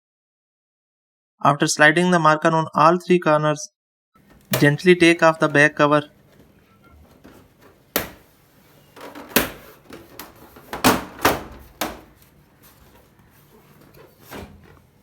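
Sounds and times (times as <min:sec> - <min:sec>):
plastic knocks and clatters: 0:06.2 - 0:14.9.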